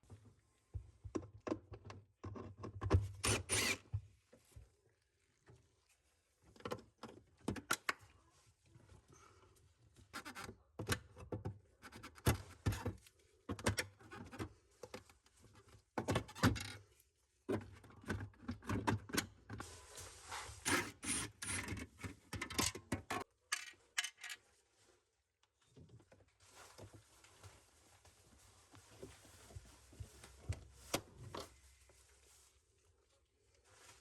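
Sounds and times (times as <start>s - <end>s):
hands rubbing and scraping parts: 19.6s - 22.4s.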